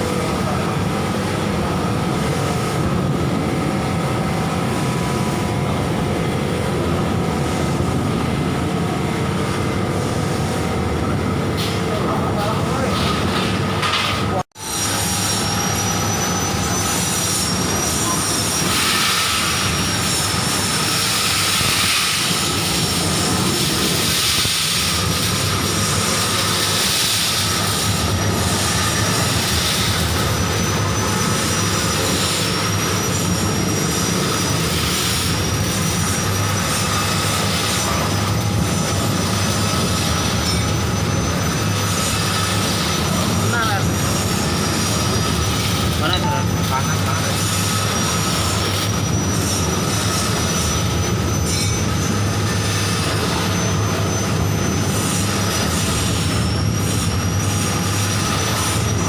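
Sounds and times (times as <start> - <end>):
grain dryer mechanical noise: 0.0 - 59.0
high wavering whine: 14.6 - 59.0.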